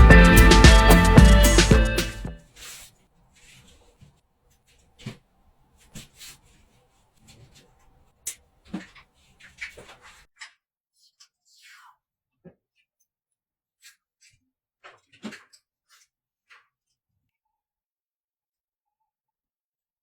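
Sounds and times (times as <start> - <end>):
background music: 0.0 - 2.4.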